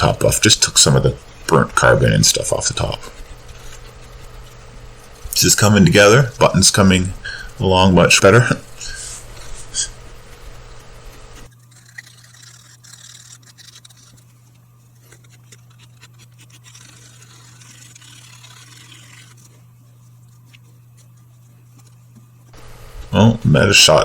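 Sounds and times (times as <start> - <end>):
abrasive scratching pipe stem: 0.0 - 14.4, 15.0 - 19.7
steady low hum: 0.0 - 24.0.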